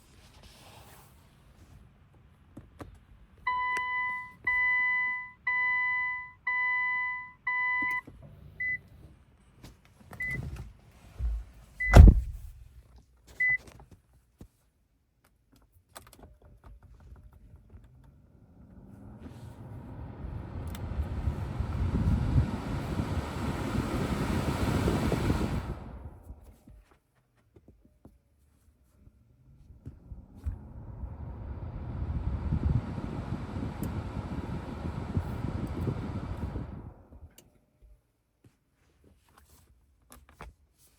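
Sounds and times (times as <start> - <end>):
car warning chime: 3.5 - 8.0
heavy thunk: 11.3 - 12.6
steady rush of noise: 19.9 - 26.3.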